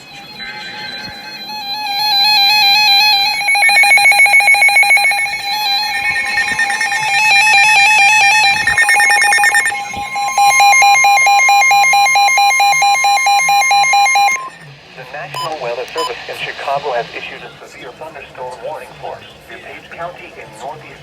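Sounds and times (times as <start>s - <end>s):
weather radio alert alarms beeping: 1.5s - 14.6s, 15.3s - 16.7s.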